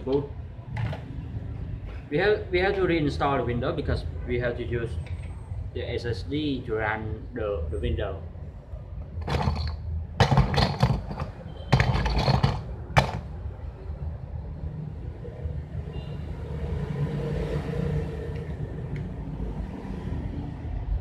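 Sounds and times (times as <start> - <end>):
laptop knocks and clatter: 9.2 - 13.4.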